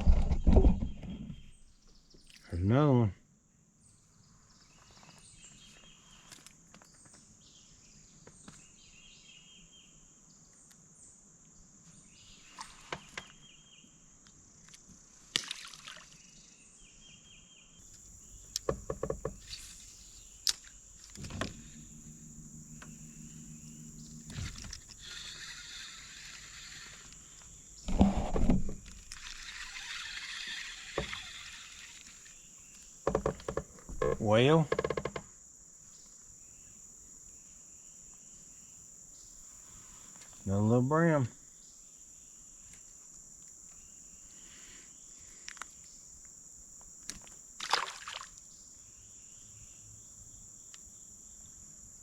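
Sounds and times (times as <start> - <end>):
bird chirps: 16.8 - 27.9
high insect drone: 17.8 - 52.0
loud thump: 21.1 - 24.8.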